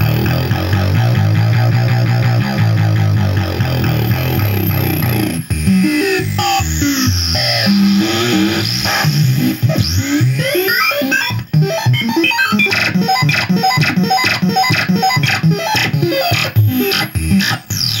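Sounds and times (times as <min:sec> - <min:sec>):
glitchy electronic bleeps and buzzes: 0:03.7 - 0:18.0.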